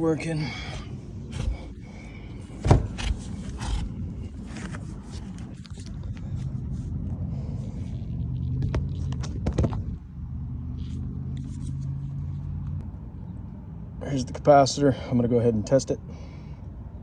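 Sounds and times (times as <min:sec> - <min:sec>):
heat pump blower humming: 0:00.0 - 0:07.9.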